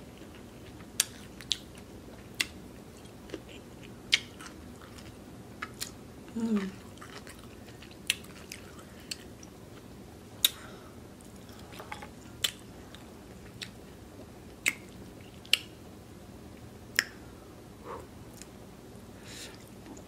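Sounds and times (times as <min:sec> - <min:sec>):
person chewing food: 0:00.1 - 0:10.6, 0:11.2 - 0:15.7.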